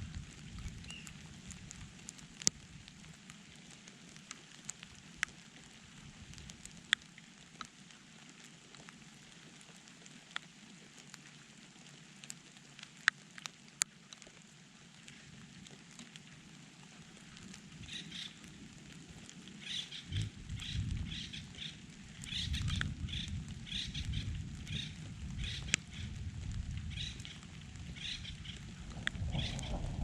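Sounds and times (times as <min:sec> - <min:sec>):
light rain hissing: 0:00.0 - 0:30.0
raindrops ticking close by: 0:00.0 - 0:30.0
low thunder rumble: 0:22.3 - 0:30.0.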